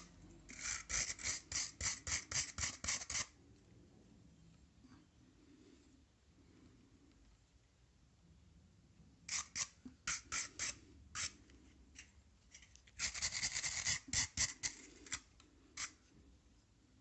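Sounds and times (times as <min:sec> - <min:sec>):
metal tool being scraped: 0:00.5 - 0:03.3, 0:09.3 - 0:16.0.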